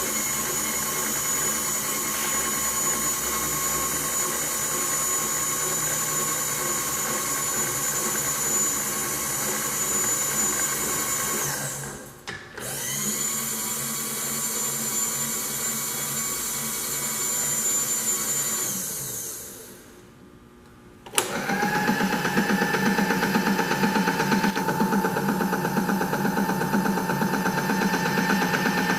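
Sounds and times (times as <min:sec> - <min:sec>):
milling machine motor whine: 0:21.2 - 0:28.9
rough pulsing machine motor: 0:21.7 - 0:28.9.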